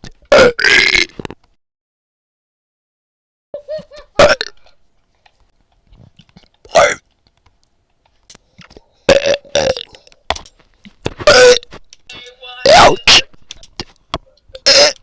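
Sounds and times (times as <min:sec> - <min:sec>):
person burping loudly: 0:00.3 - 0:01.2, 0:04.2 - 0:04.8, 0:06.7 - 0:07.0, 0:09.1 - 0:10.1, 0:11.2 - 0:11.7, 0:14.6 - 0:15.0.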